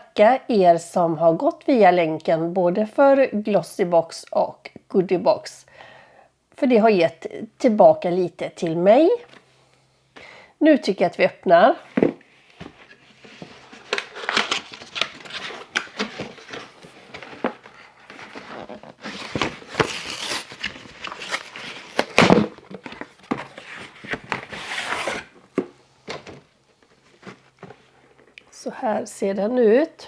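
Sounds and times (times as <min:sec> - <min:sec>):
packaging crinkling and tearing: 0:12.8 - 0:25.3.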